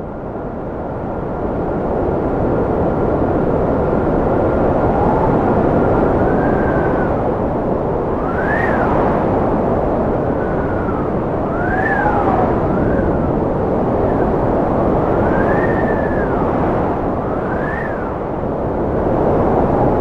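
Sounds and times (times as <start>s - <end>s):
howling wind whistle: 0.0s - 20.0s
strong wind rushing: 0.0s - 20.0s.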